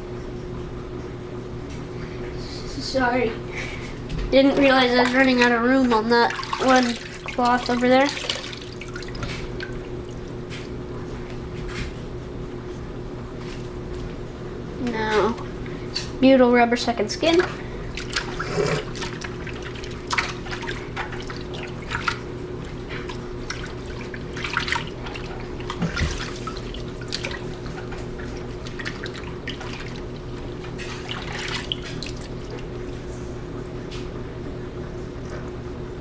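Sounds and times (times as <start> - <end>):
water splashing in a sink: 4.2 - 11.4, 16.8 - 34.1.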